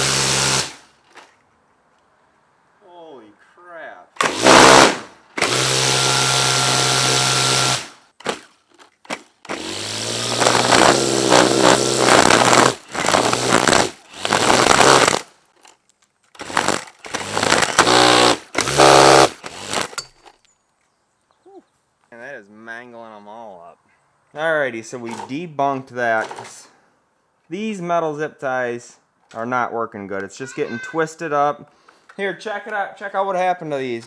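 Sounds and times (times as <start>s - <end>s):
string trimmer motor with harsh hiss: 0.0s - 0.9s, 4.2s - 8.0s, 9.5s - 15.3s, 16.4s - 20.1s.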